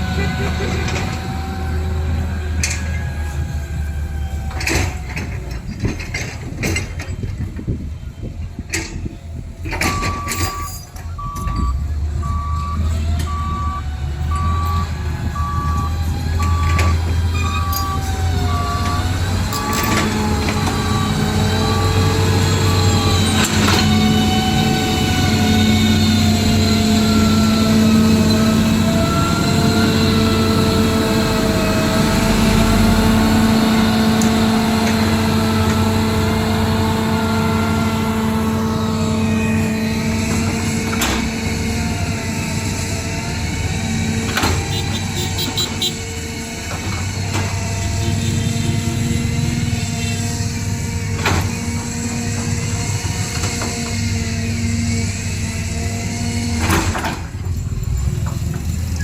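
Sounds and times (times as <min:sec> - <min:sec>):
engine drone: 0:00.0 - 0:59.0
reversing beeper: 0:09.7 - 0:40.1.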